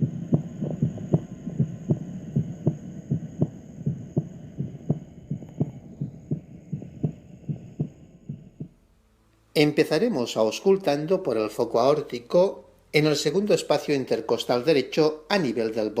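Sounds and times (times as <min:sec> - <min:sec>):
heartbeat through stethoscope: 0:00.0 - 0:08.8.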